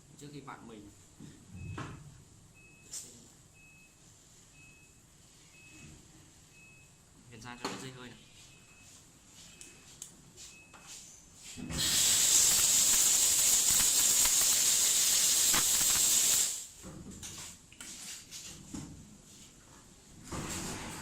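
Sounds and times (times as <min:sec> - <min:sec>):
air blowgun hissing: 0:11.7 - 0:16.7.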